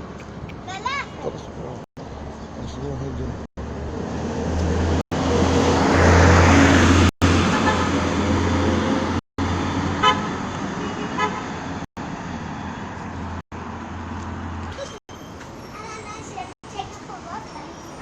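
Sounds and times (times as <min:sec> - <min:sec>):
car engine and road rumble: 0:00.0 - 0:15.6
car horn toots: 0:10.0 - 0:11.5.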